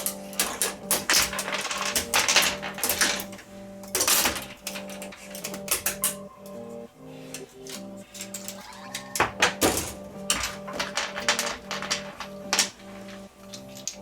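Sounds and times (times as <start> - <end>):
plastic parts clicking and clattering: 0.0 - 6.6, 7.3 - 14.0
background music: 0.0 - 14.0.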